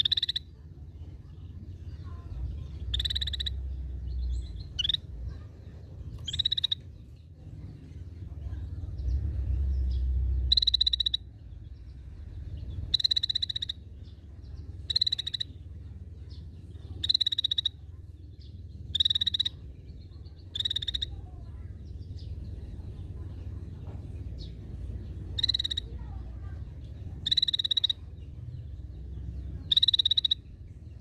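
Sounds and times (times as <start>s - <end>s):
bird rattling calls: 6.2s - 6.8s, 25.4s - 25.9s, 27.2s - 28.0s.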